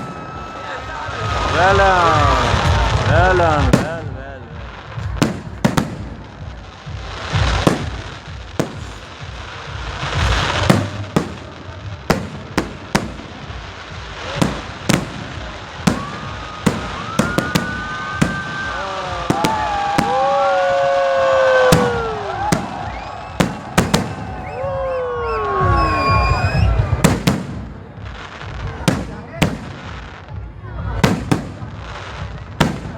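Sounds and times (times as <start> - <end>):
falling firework whistles: 0.0 - 2.8, 15.8 - 27.4
firework hissing bursts: 0.0 - 24.6
firecracker bangs: 0.0 - 32.9.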